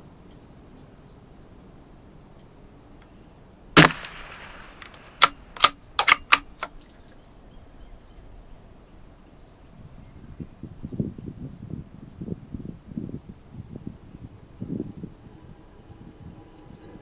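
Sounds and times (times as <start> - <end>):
rifle shot: 3.8 - 6.7
rifle bolt clicks: 3.8 - 6.8.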